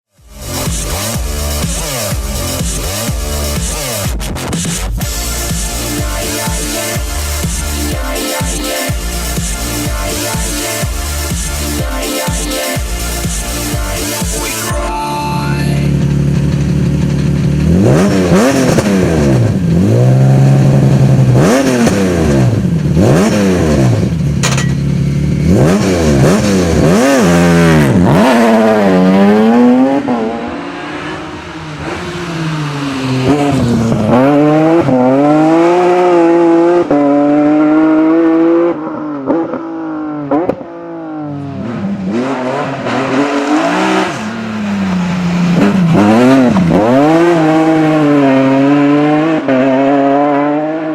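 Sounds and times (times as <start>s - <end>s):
rally car engine revving: 0.1s - 14.7s, 15.7s - 50.9s.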